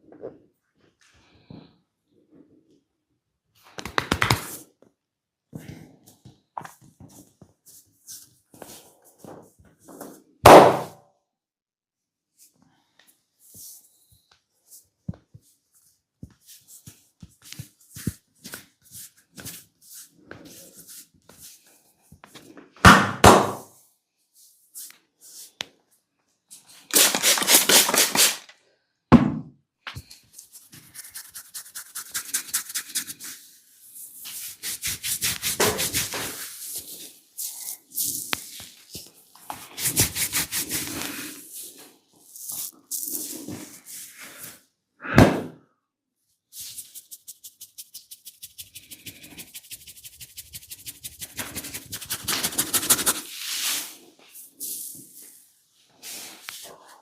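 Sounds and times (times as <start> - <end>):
fast strokes on skin and hair: 30.4 - 33.5, 34.2 - 37.7, 39.7 - 41.4, 46.6 - 53.8.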